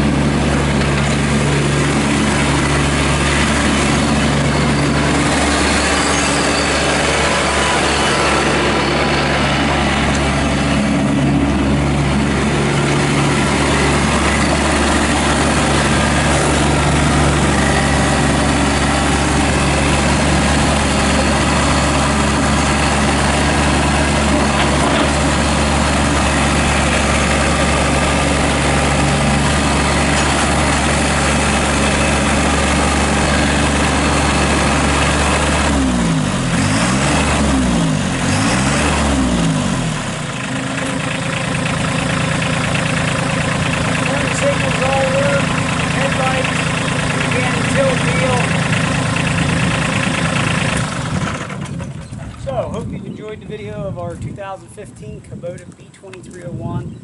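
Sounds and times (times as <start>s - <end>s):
tractor diesel engine running: 0.0s - 57.0s.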